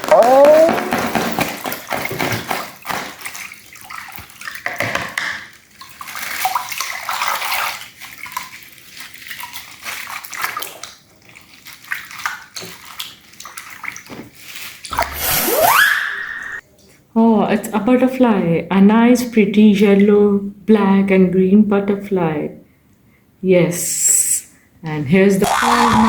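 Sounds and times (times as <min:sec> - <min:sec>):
hands squishing slime: 0:25.4 - 0:26.0.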